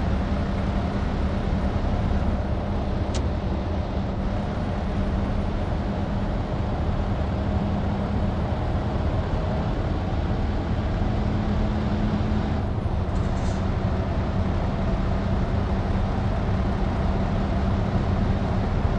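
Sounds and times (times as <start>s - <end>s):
road noise: 0.0s - 18.9s
truck engine under load: 0.0s - 18.9s.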